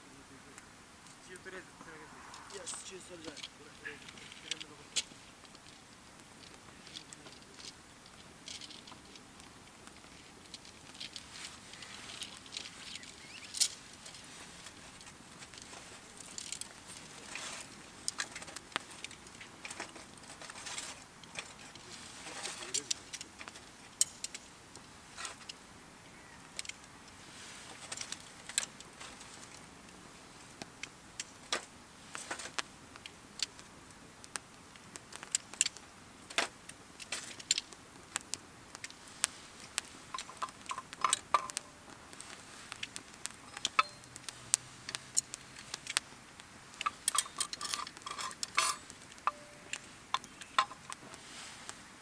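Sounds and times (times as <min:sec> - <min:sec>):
metal utensils clinking on cookware: 0:46.8 - 0:49.7.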